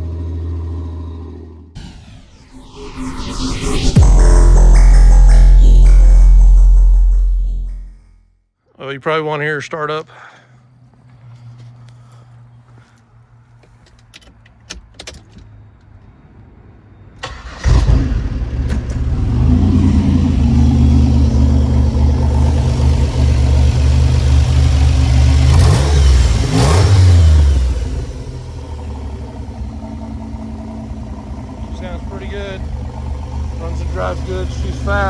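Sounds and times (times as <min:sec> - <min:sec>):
car engine starting and revving: 0:17.2 - 0:35.0
car engine idling: 0:19.6 - 0:26.5, 0:27.9 - 0:35.0.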